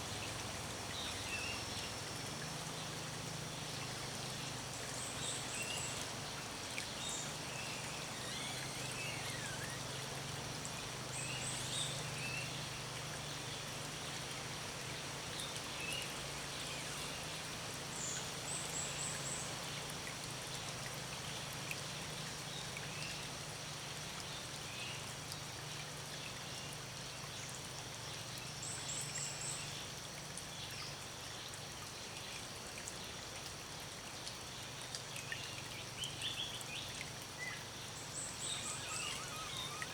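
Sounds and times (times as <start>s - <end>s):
stream rushing: 0.0s - 19.6s, 37.1s - 39.9s
songbirds chirping: 34.6s - 39.9s.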